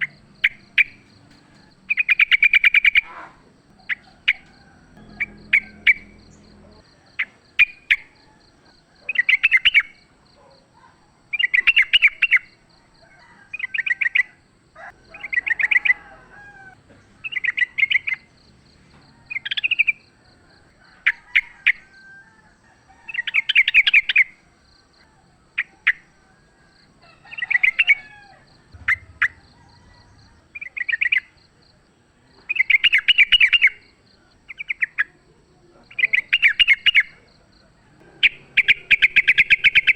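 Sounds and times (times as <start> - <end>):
bird singing chattering phrases: 17.1 - 18.3, 35.8 - 37.2, 38.0 - 39.9.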